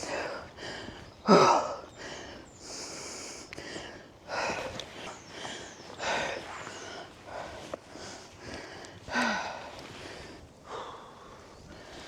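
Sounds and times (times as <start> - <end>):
person breathing hard: 7.3 - 12.0.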